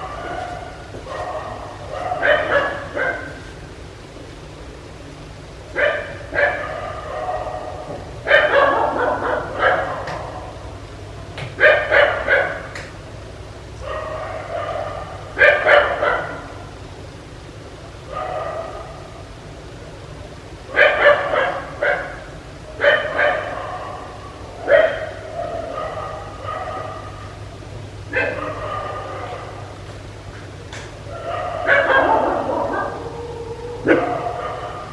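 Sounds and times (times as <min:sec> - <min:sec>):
dog barking: 0:00.0 - 0:03.5, 0:05.7 - 0:10.7, 0:11.5 - 0:12.8, 0:13.8 - 0:16.7, 0:18.0 - 0:19.3, 0:20.7 - 0:27.5, 0:28.1 - 0:29.8, 0:31.1 - 0:34.9.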